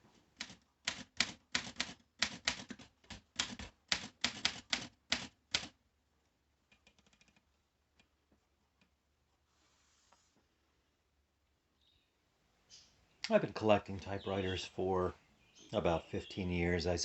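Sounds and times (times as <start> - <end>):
typewriter keystrikes: 0.4 - 5.7.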